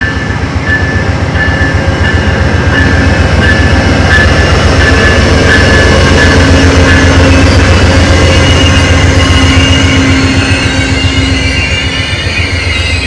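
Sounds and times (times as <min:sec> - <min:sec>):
low rumble of rolling train: 0:00.0 - 0:13.0
train brakes squealing: 0:00.0 - 0:13.0.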